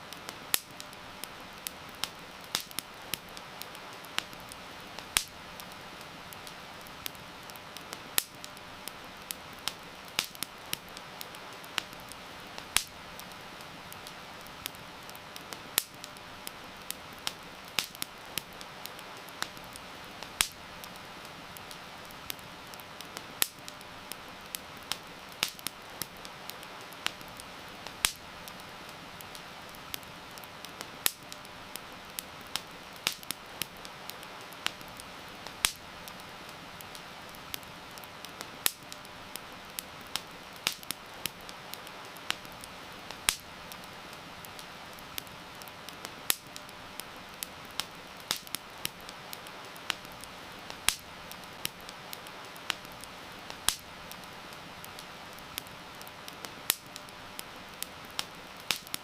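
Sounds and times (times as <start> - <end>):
campfire crackling and popping: 0.0 - 59.0
heavy rain hiss: 0.0 - 59.0.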